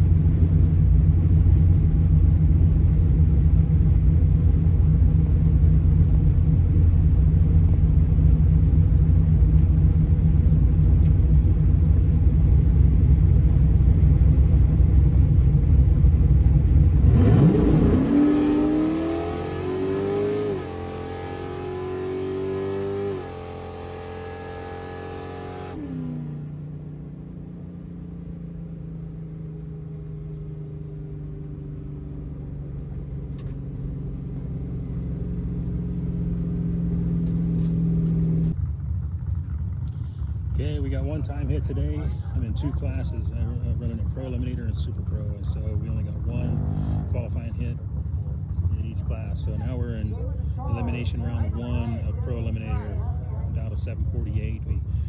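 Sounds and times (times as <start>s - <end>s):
race car engine accelerating: 1.4s - 26.8s, 39.8s - 55.0s.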